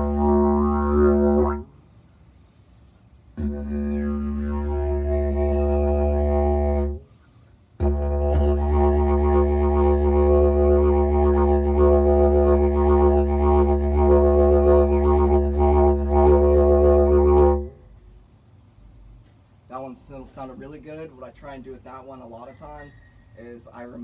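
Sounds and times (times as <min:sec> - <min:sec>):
didgeridoo drone: 0:00.0 - 0:01.7, 0:03.3 - 0:07.1, 0:07.8 - 0:17.9.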